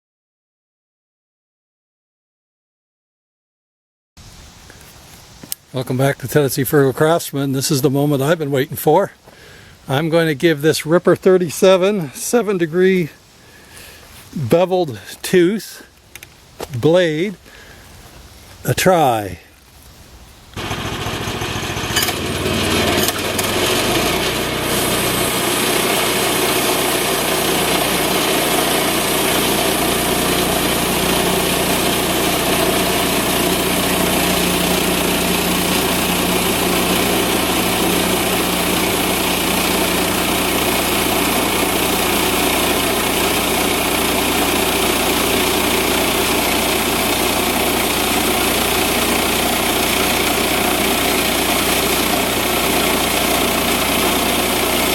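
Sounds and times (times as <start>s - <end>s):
sawmill engine running: 20.6s - 54.9s
band blade hissing through wood: 24.6s - 53.6s.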